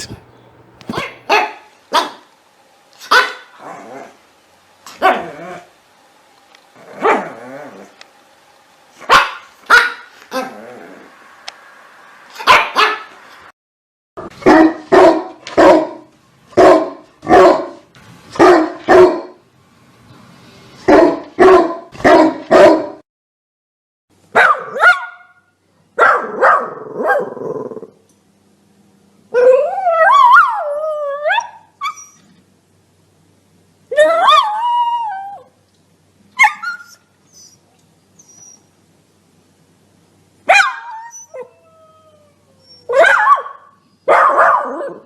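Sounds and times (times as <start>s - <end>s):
dogs barking: 0.8s - 2.3s, 3.0s - 3.6s, 9.0s - 10.2s, 12.4s - 13.2s, 14.4s - 17.8s, 18.4s - 19.4s, 20.9s - 23.0s, 24.4s - 25.4s, 26.0s - 27.4s, 40.5s - 41.2s, 42.9s - 45.0s
dog howling: 29.4s - 31.6s, 34.0s - 35.5s, 40.6s - 43.6s.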